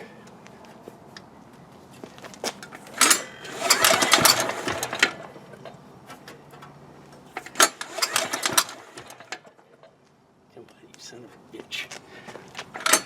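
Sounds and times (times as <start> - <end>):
generator engine cranking: 2.5 - 10.0, 12.6 - 13.0.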